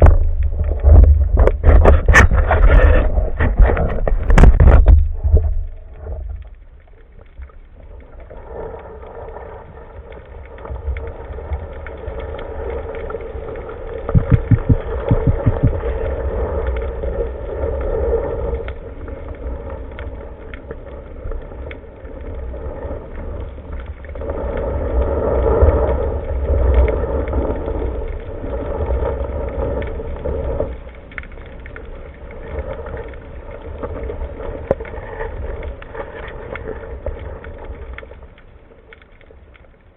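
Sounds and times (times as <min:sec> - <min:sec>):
underwater rushing hum: 0:07.6 - 0:21.7
quick run of knocks: 0:14.2 - 0:15.8.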